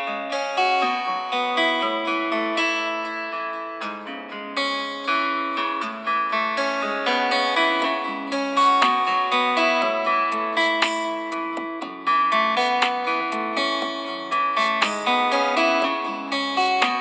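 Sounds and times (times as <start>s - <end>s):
phone ringtone plucked melody: 5.1s - 17.0s.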